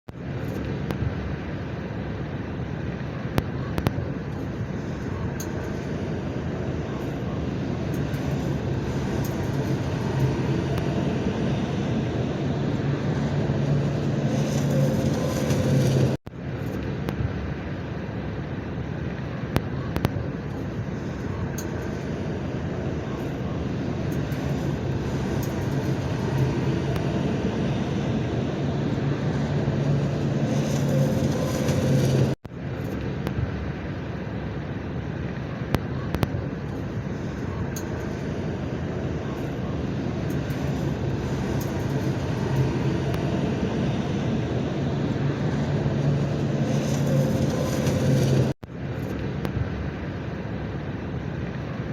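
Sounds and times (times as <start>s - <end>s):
bulldozer diesel engine running: 3.2s - 16.2s, 20.4s - 32.4s, 36.5s - 48.6s.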